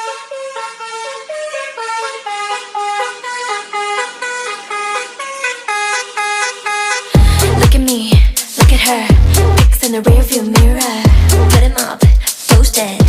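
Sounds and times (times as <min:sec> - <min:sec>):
honking car-horn-like tune: 0:00.0 - 0:07.6
dance beat with heavy bass: 0:03.9 - 0:13.0.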